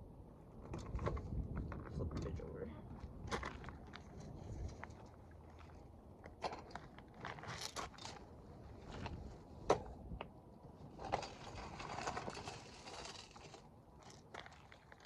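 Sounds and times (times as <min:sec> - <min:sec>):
rustling scraping noise: 0:03.2 - 0:05.8, 0:10.8 - 0:15.0.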